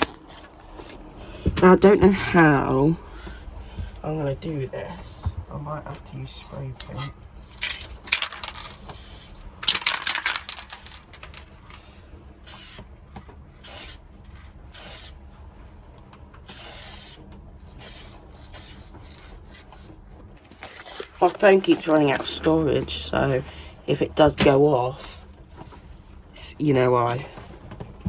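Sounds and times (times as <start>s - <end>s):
spray paint can hissing: 8.7s - 11.7s, 12.4s - 12.9s, 13.6s - 14.0s, 14.7s - 15.2s, 16.5s - 17.2s, 17.8s - 18.9s.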